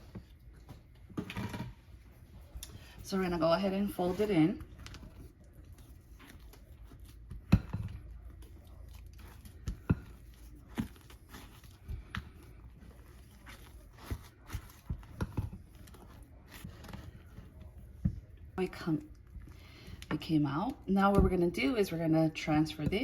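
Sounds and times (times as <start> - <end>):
utensil scraping mixing bowl: 1.2 - 23.0.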